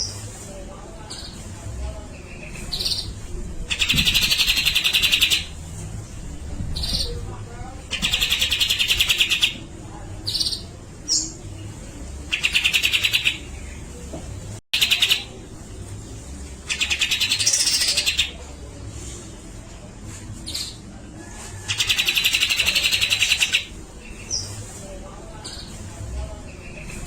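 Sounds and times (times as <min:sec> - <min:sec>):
bird rattling chatters: 0:03.7 - 0:05.5, 0:07.9 - 0:09.6.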